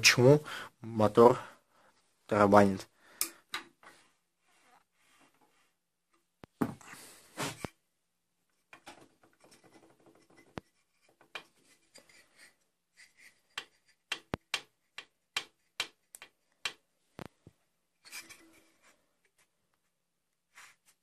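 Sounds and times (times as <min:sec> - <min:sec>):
hands rubbing and scraping parts: 0:08.4 - 0:21.0
sharp clicks and taps: 0:13.6 - 0:17.4.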